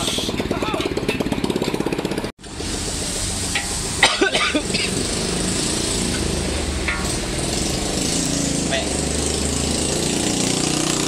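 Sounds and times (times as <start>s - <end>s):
cluster of sharp sounds: 0.0s - 11.0s
engine running steadily: 0.0s - 11.0s.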